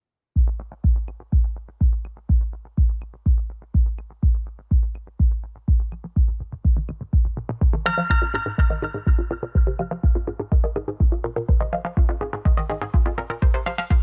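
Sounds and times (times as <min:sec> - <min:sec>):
deep kick drum beat: 0:00.4 - 0:14.0
electronic music: 0:00.4 - 0:14.0.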